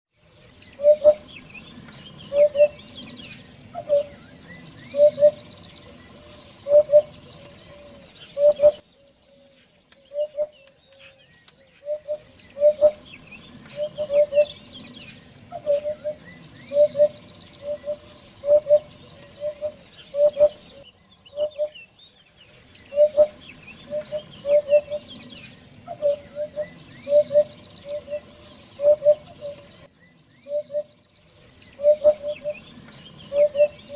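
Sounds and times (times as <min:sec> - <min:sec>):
small birds twittering: 0:00.1 - 0:33.9
hoopoe hooting: 0:02.2 - 0:08.8, 0:11.8 - 0:20.8, 0:22.9 - 0:29.8, 0:31.8 - 0:33.9.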